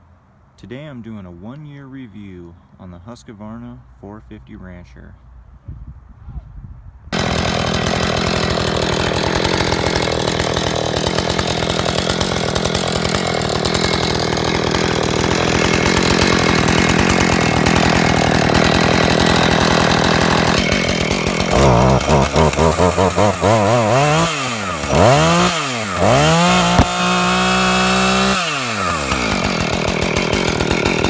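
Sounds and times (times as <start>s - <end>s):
chainsaw running at high revs: 7.2s - 31.0s.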